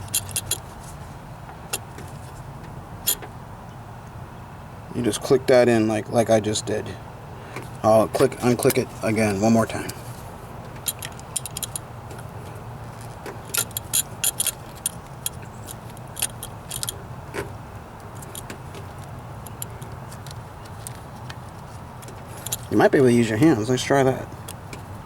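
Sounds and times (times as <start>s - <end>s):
plastic clicks and metal rattles: 0.0s - 0.6s, 10.7s - 12.2s, 13.2s - 17.5s, 18.1s - 21.4s, 22.0s - 22.8s.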